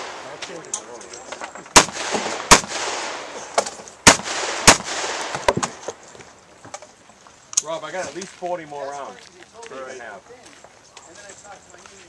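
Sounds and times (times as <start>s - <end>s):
rifle gunshots echoing: 0.0s - 0.8s, 1.7s - 5.8s.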